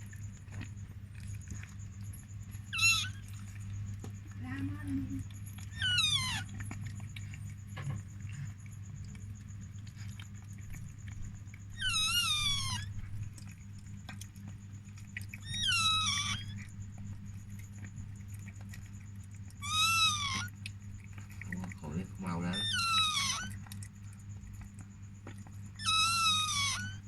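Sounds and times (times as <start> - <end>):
steady low hum: 0.0 - 27.0
puppy crying: 2.6 - 3.6, 5.3 - 7.0, 11.7 - 13.2, 15.4 - 16.7, 19.6 - 20.6, 22.2 - 23.8, 25.8 - 27.0.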